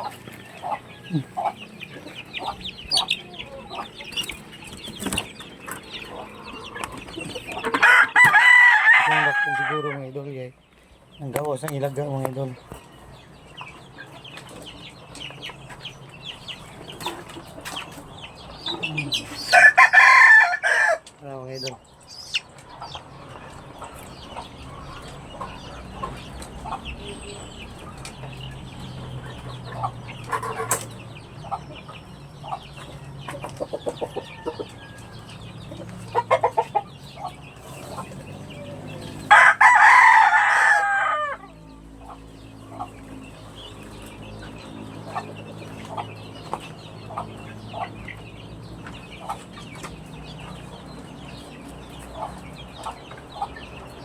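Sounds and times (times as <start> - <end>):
chickens clucking: 0.0 - 54.0
rooster crowing: 7.7 - 10.0, 19.4 - 21.1, 34.1 - 35.5, 39.2 - 41.7.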